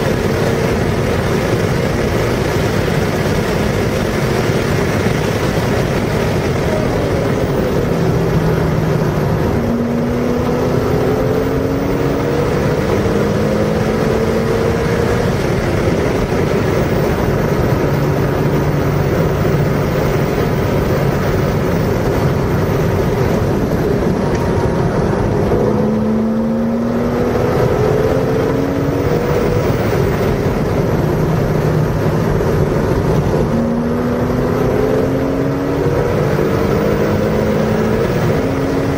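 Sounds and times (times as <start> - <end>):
car engine accelerating: 0.0 - 38.9
wind and road noise: 0.0 - 38.9.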